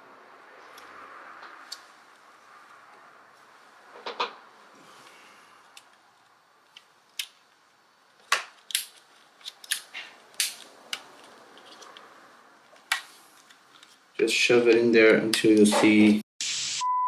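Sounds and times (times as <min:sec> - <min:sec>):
plastic parts clicking and tapping: 0:08.2 - 0:12.0.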